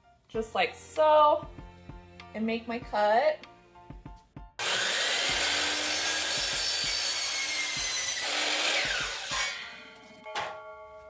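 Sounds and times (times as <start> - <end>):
chop saw cutting wood: 4.6 - 9.8.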